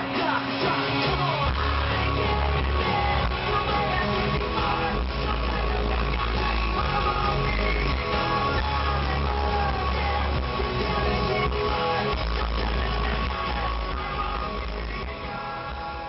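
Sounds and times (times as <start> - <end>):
rock music with guitar: 0.0 - 16.0.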